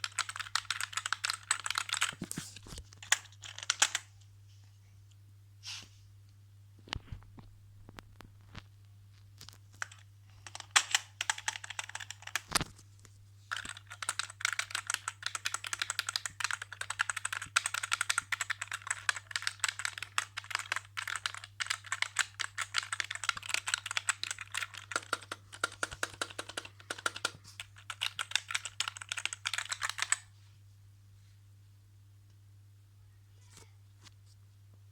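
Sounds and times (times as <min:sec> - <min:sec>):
fast typing on keyboard: 0:00.0 - 0:02.2, 0:03.0 - 0:04.0, 0:09.8 - 0:12.6, 0:13.5 - 0:30.3.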